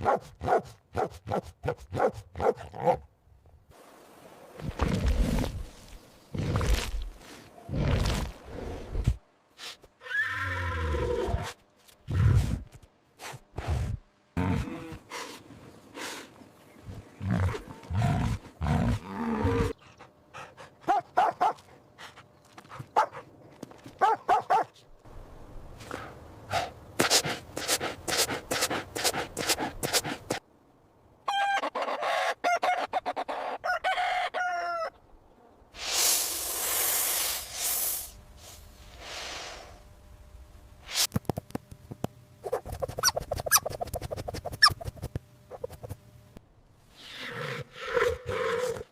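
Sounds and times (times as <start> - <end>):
rooster crowing: 31.3 - 35.0.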